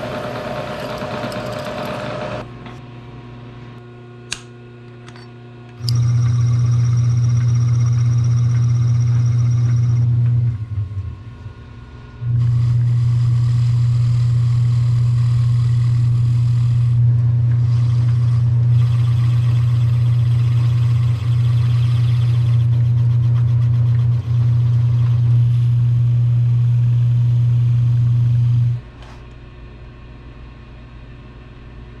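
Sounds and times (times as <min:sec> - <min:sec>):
electric motor humming and grinding: 0:00.0 - 0:02.5, 0:05.8 - 0:10.8, 0:12.2 - 0:28.8.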